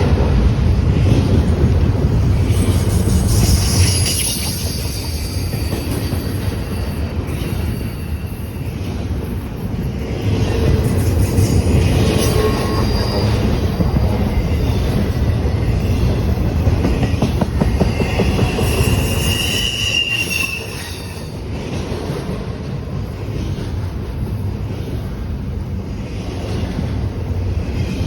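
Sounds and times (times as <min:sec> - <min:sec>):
freight train wheels rumbling: 0:00.0 - 0:28.0
high-pitched wheel squeal: 0:03.1 - 0:07.0, 0:17.9 - 0:21.3.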